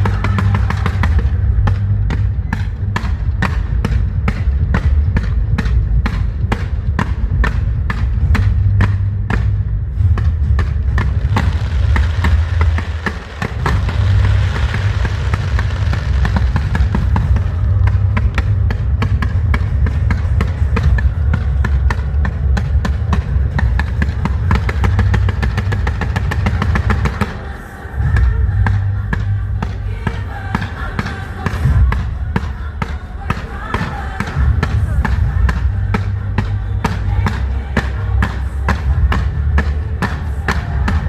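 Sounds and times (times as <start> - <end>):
low rumble: 0.0 - 27.2
fireworks crackling and popping: 10.7 - 18.4.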